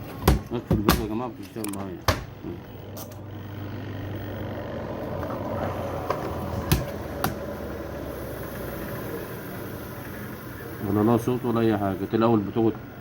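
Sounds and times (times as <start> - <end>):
spin dryer humming: 1.9 - 13.0.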